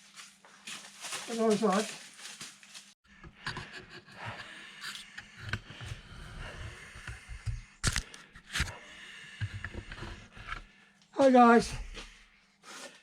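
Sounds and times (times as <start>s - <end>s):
scraping and rustling: 0.0s - 4.1s.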